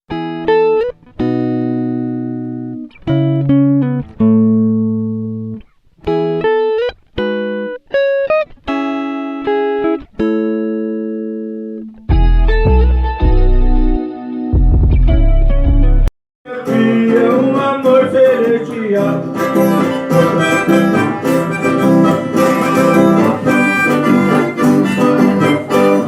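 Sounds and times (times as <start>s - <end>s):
low harmonica accompaniment: 16.5s - 26.0s
harmonica playing slow hymn: 18.7s - 26.0s.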